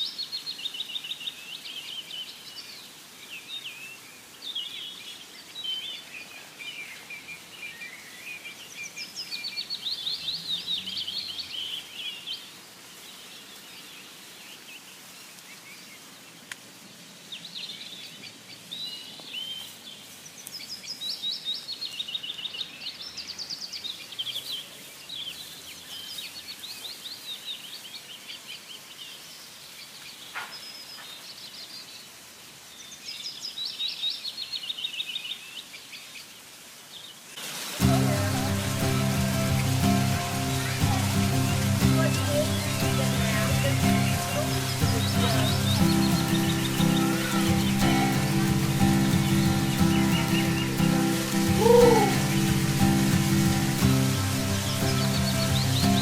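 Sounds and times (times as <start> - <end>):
steady background hiss: 0.0 - 56.0
birds chirping trills: 37.8 - 56.0.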